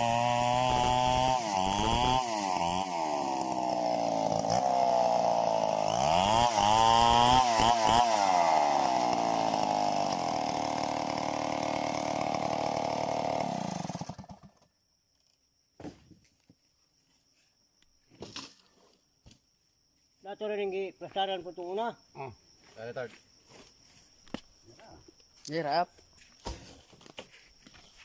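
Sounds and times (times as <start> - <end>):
chainsaw cutting wood: 0.0 - 14.7.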